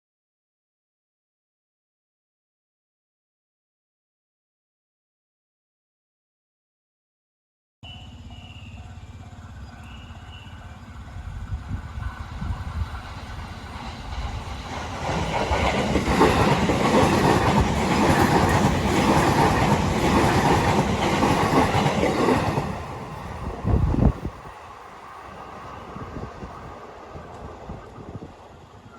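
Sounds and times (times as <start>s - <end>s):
electric train passing at speed: 7.8s - 28.9s.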